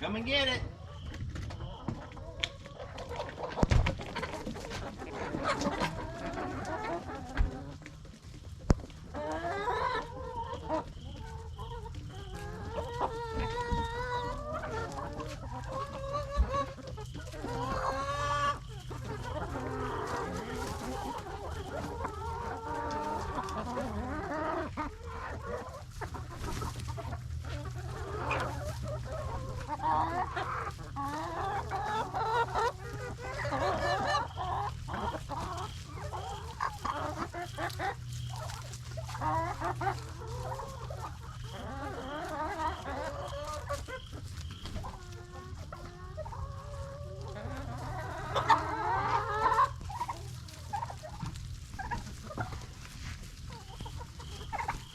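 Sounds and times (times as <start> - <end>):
chickens clucking: 0.0 - 54.9
steady low hum: 14.3 - 54.9.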